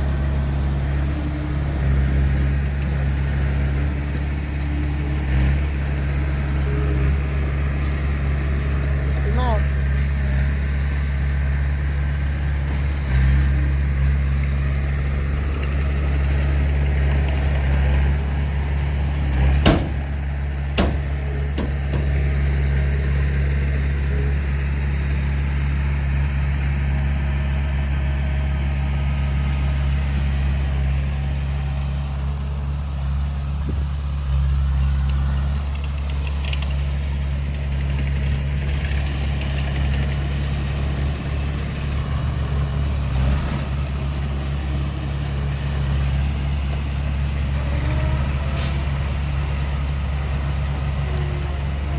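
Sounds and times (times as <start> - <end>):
heavy diesel engine droning: 0.0 - 51.9
sharp knocks: 19.6 - 20.1, 20.7 - 22.2.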